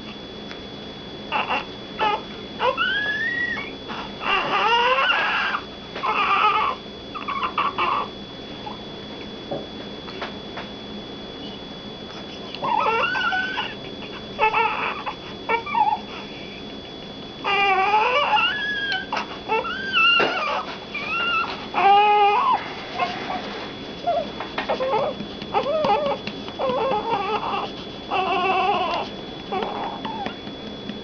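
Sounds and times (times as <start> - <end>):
baby crying: 1.3 - 8.1, 12.6 - 16.0, 17.4 - 23.4, 24.1 - 30.4.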